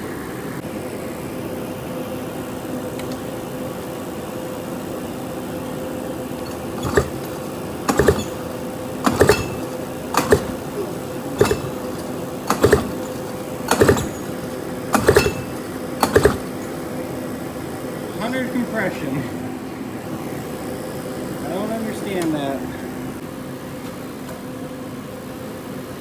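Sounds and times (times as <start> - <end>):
steady hum: 0.0 - 23.7
recoil starter pulls clattering: 3.0 - 3.4, 6.2 - 17.3.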